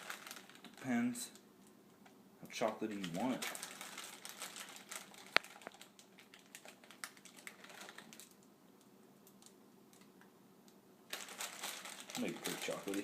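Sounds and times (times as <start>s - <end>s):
chocolate chips pattering into dish: 2.6s - 8.4s, 11.1s - 13.0s.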